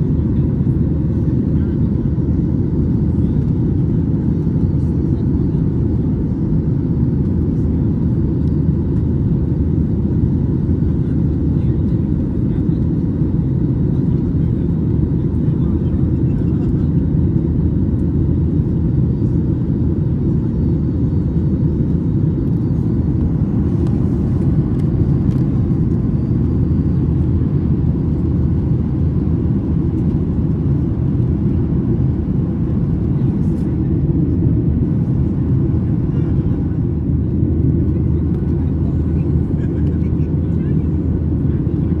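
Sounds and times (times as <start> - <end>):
airliner cabin rumble: 0.0 - 42.0.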